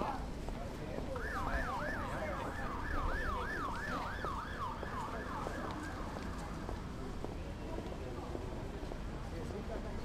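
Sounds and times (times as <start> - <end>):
street noise rumble: 0.0 - 10.0
siren yelping: 1.2 - 6.2.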